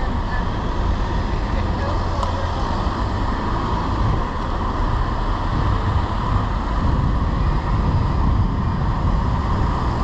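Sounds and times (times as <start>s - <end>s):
road traffic: 0.0s - 10.0s
wind buffeting microphone: 3.1s - 10.0s.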